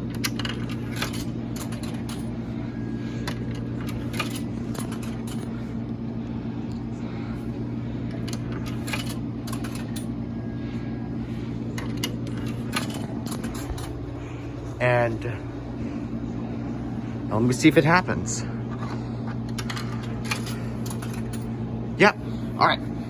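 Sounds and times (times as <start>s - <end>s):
vending machine hum: 0.0s - 23.0s
coins clicking into slot: 0.1s - 2.4s, 3.2s - 5.5s, 8.2s - 10.1s, 11.8s - 14.0s, 19.5s - 21.5s.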